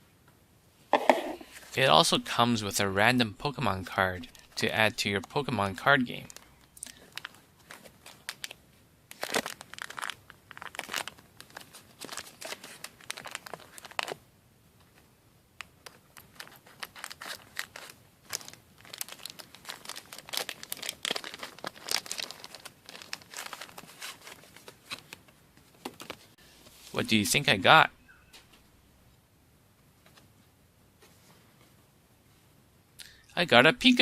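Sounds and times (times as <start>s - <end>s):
plastic wrapper crinkling and tearing: 6.2s - 14.2s, 15.8s - 25.2s.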